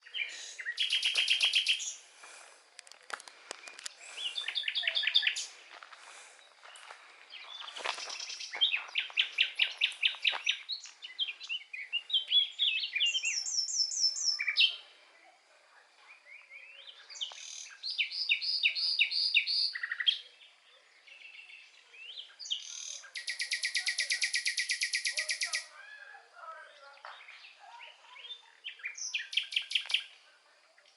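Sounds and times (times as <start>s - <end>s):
songbirds singing: 0.0s - 30.9s
high bird trill: 0.6s - 2.0s.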